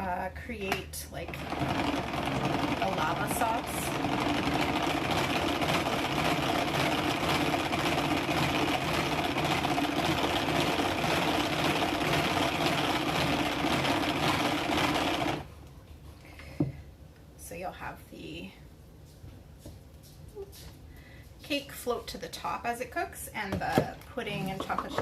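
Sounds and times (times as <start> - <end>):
mixer whirring: 1.1 - 15.6.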